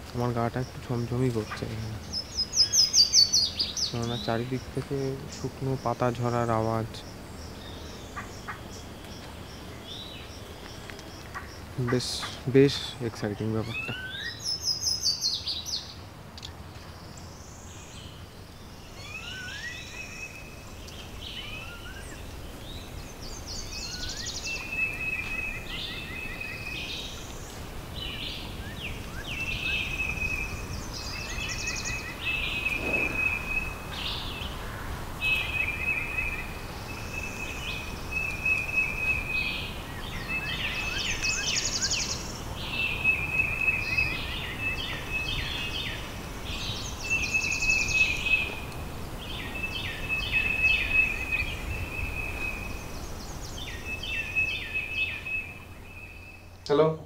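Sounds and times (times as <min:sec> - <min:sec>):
low background noise: 0:00.0 - 0:57.0
birds chirping and whistling: 0:01.4 - 0:10.3, 0:12.2 - 0:16.0, 0:28.0 - 0:34.6, 0:35.2 - 0:48.6
bird repeating trilled phrase: 0:03.9 - 0:06.6.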